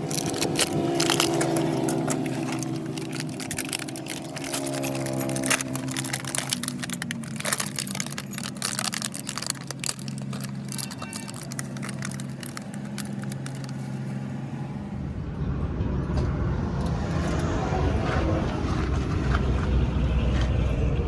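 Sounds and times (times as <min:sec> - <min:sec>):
workshop machinery humming: 0:00.0 - 0:15.4
low engine rumble: 0:00.0 - 0:21.0.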